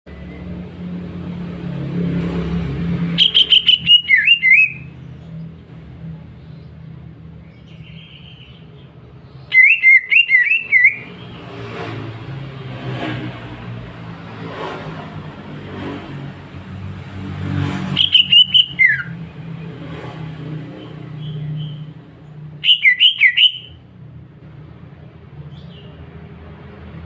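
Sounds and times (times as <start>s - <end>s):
bird singing whistled notes: 3.1s - 5.0s, 7.5s - 11.2s, 17.9s - 19.2s, 21.2s - 21.9s, 22.6s - 23.8s.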